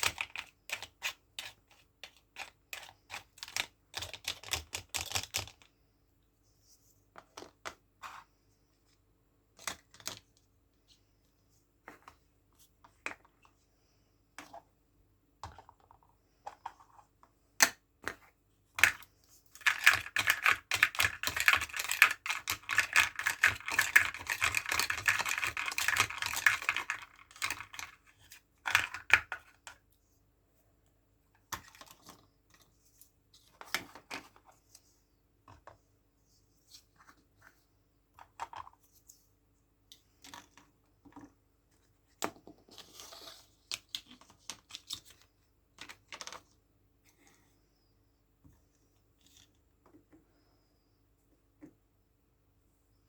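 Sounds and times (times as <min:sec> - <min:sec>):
plastic toy pieces clicking: 0:19.6 - 0:28.0.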